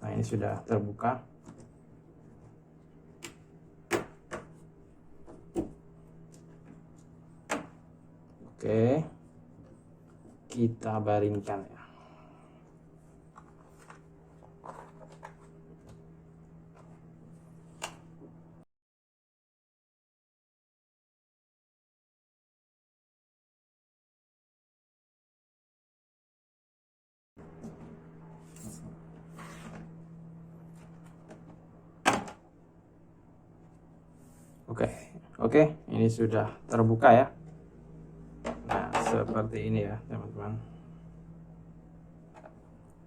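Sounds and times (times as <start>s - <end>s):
low steady hum: 0.0s - 18.6s, 27.4s - 43.0s
faint low hum: 27.4s - 43.0s.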